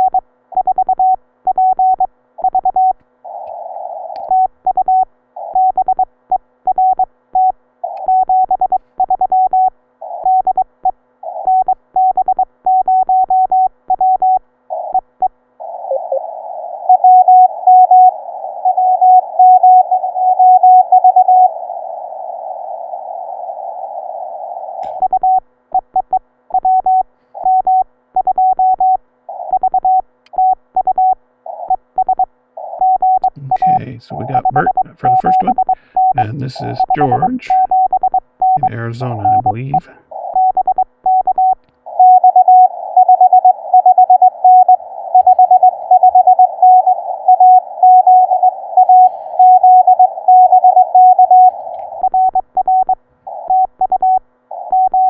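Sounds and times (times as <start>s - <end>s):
morse code tone: 32.8s - 55.0s
radio receiver hiss: 33.3s - 37.7s.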